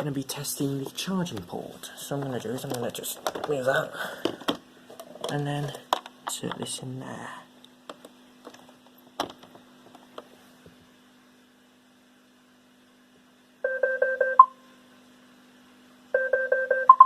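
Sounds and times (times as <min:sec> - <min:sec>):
rapid two-tone beeps: 0:16.2 - 0:17.0.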